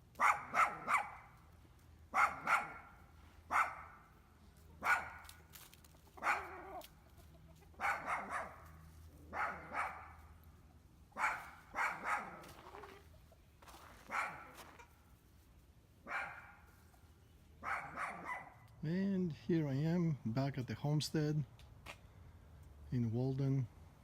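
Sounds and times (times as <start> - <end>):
dog barking: 0.2 - 1.3, 2.1 - 4.1, 4.8 - 5.3, 6.2 - 6.8, 7.8 - 8.7, 9.3 - 10.3, 11.2 - 12.6, 14.0 - 14.8, 16.0 - 16.7, 17.6 - 18.6.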